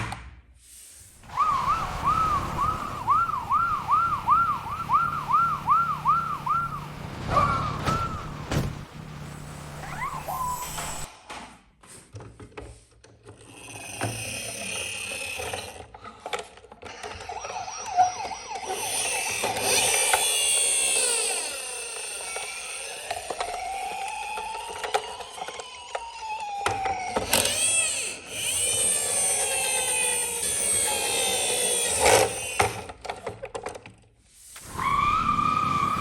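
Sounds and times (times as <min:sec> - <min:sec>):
emergency vehicle sirens: 0:01.2 - 0:11.1, 0:22.4 - 0:27.8, 0:34.6 - 0:36.0.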